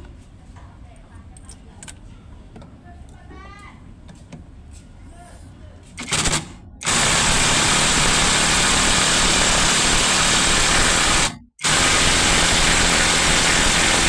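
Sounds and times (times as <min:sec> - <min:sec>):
impact wrench hammering: 0:06.0 - 0:14.0.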